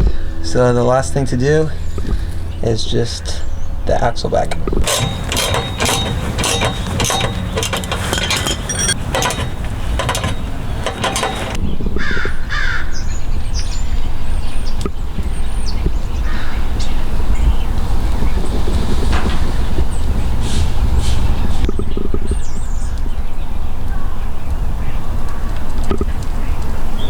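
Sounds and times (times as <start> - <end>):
ratchet wrench clicking: 4.8 - 11.6.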